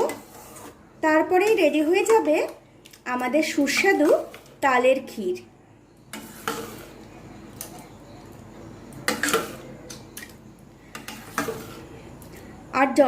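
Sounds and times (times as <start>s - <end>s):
spatula scraping a pan: 0.0s - 2.6s, 3.6s - 4.6s, 6.0s - 7.1s, 9.1s - 9.7s, 10.9s - 12.1s.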